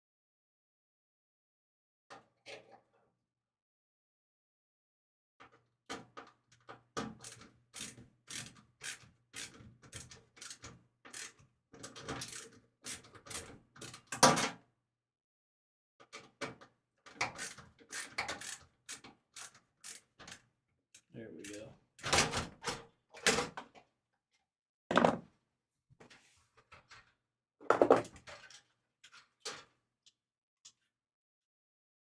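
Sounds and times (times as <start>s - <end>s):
computer parts clicking and rattling: 21.4s - 22.4s.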